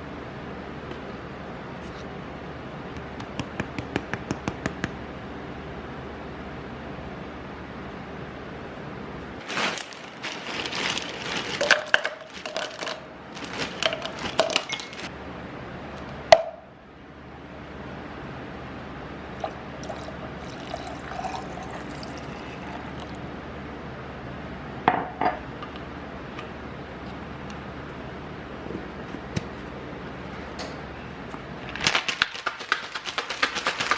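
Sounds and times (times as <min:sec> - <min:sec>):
rustling: 0:09.4 - 0:15.1
pouring: 0:19.4 - 0:23.2.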